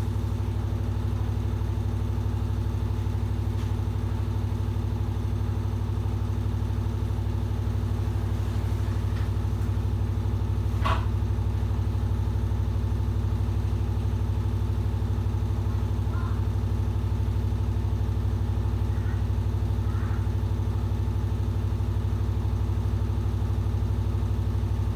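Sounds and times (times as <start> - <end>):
washing machine running: 0.0 - 24.9
washing machine knock: 10.7 - 11.2.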